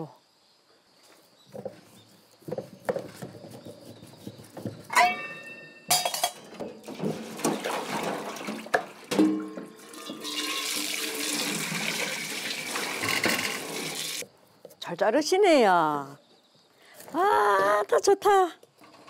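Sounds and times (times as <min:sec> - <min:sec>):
running water: 0:06.8 - 0:14.2.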